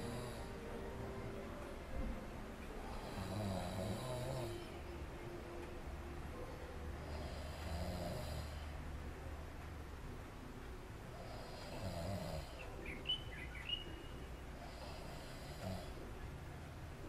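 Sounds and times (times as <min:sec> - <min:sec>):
person snoring: 0:00.0 - 0:00.6, 0:02.9 - 0:04.7, 0:07.0 - 0:08.8, 0:11.2 - 0:12.6, 0:14.7 - 0:16.0.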